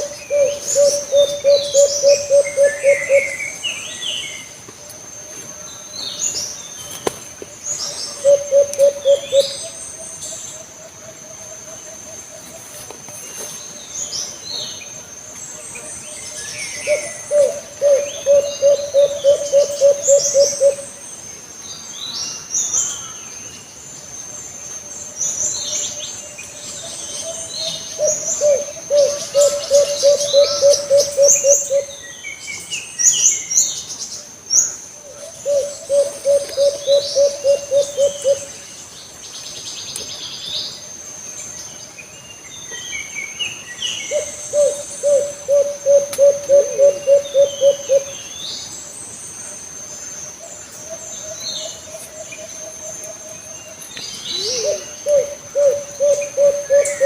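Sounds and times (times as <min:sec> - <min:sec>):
dove cooing: 0:00.0 - 0:03.6, 0:08.2 - 0:09.6, 0:16.9 - 0:20.9, 0:28.0 - 0:31.9, 0:35.1 - 0:38.5, 0:44.1 - 0:48.2, 0:54.3 - 0:57.0.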